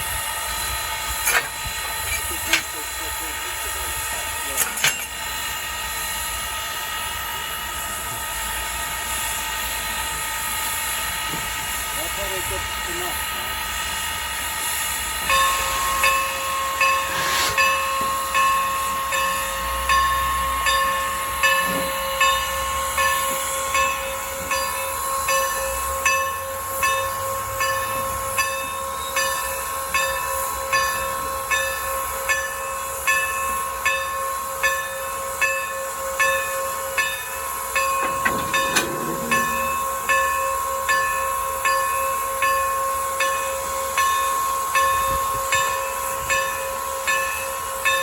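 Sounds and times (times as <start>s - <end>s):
steam hiss: 0.0s - 48.0s
steady high ringing tone: 15.1s - 48.0s
locomotive air pump beating: 15.3s - 18.7s, 37.8s - 40.4s.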